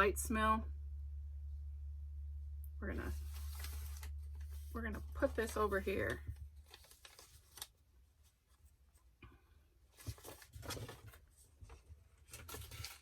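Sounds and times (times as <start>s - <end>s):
soft rustling: 3.0s - 9.2s, 9.9s - 13.0s.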